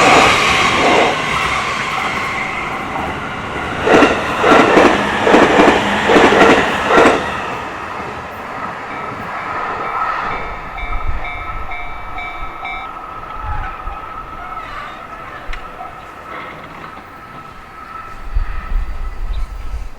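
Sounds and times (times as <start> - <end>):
train wheels clattering over rail joints: 0.0 - 7.7, 12.5 - 19.6
crossing warning bell ringing: 8.3 - 18.1.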